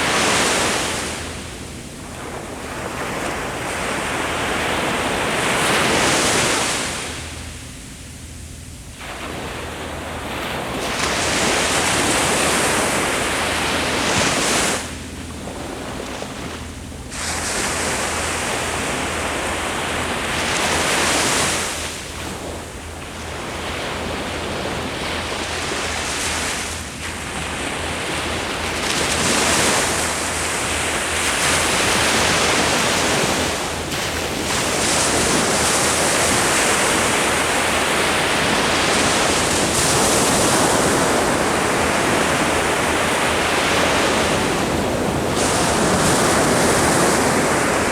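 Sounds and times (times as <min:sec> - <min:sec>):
ocean waves breaking on shore: 0:00.0 - 0:07.8, 0:08.6 - 0:47.9.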